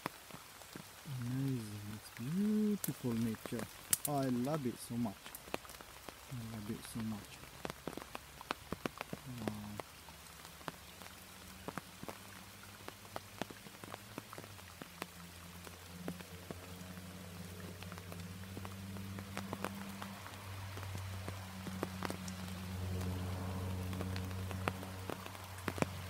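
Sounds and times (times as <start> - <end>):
raindrops ticking: 0.0 - 26.0.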